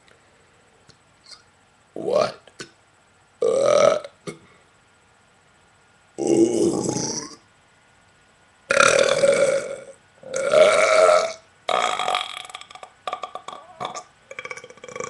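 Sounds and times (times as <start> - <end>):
person burping loudly: 8.7 - 15.0.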